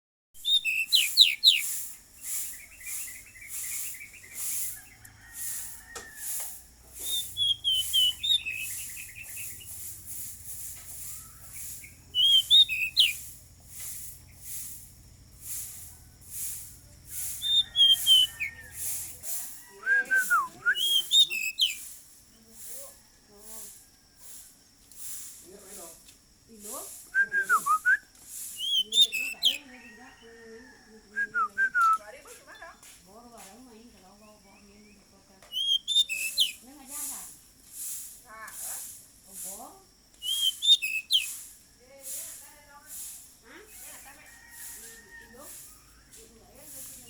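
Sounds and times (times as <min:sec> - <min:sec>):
bird whistled song with trills: 0:00.4 - 0:04.9, 0:07.0 - 0:13.4, 0:17.1 - 0:18.8, 0:19.7 - 0:21.9, 0:27.1 - 0:29.7, 0:35.5 - 0:36.7, 0:40.2 - 0:41.5
rasping hiss: 0:01.0 - 0:29.6, 0:36.1 - 0:47.0.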